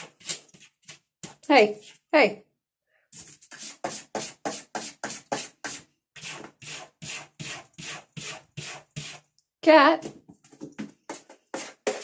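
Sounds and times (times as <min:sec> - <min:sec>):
cat scratching at a wall: 0:03.4 - 0:09.3.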